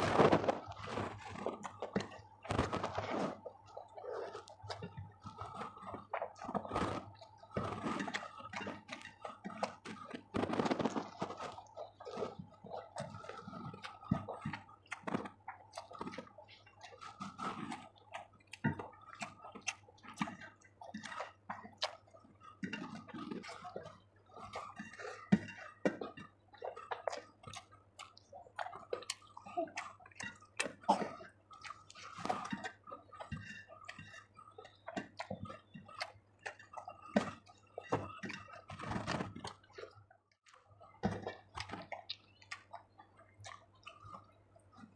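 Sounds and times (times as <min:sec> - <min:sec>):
person chewing food: 0:00.0 - 0:44.9.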